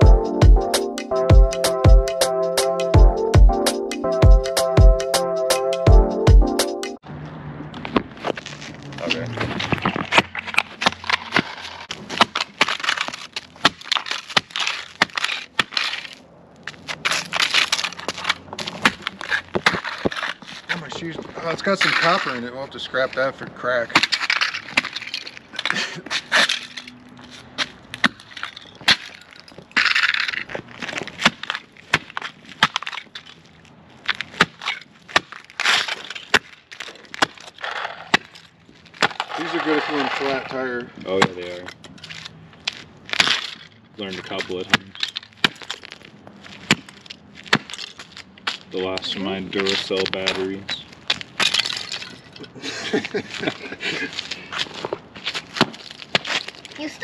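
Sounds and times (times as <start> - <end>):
plastic toy snapping and crunching: 9.9 - 16.2, 27.9 - 40.2.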